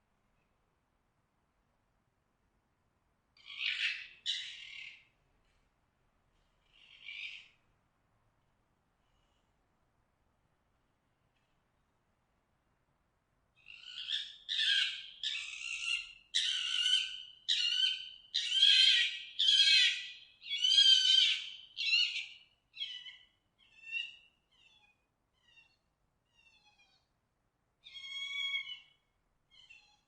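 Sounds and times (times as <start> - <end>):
fox yelping calls: 13.7 - 27.1, 27.8 - 30.0.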